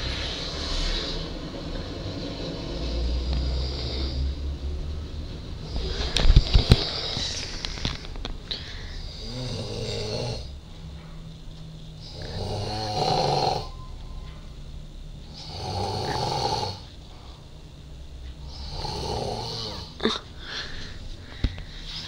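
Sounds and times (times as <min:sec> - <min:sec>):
man snoring: 0:02.0 - 0:04.5, 0:05.6 - 0:07.4, 0:08.8 - 0:10.6, 0:12.0 - 0:13.7, 0:15.3 - 0:16.9, 0:18.4 - 0:20.2.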